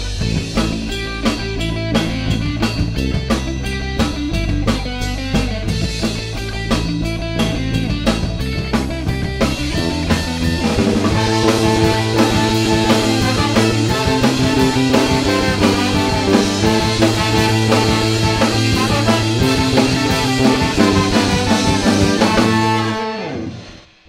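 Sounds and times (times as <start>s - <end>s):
drum kit beat: 0.0s - 23.8s
guitar chords ringing: 9.9s - 23.9s.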